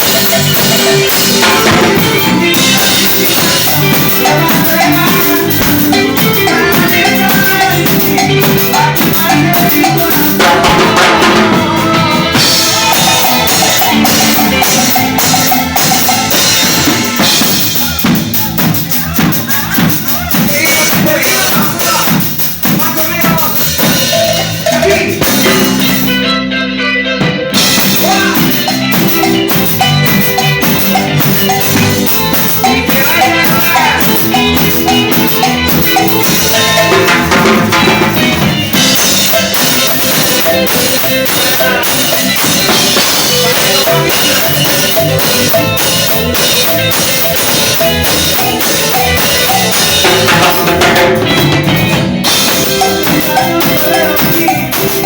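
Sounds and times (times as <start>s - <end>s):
cymbals: 0.0s - 26.3s
drums marking breaks: 0.0s - 26.3s, 27.2s - 55.0s
cumbia band playing: 0.0s - 55.0s.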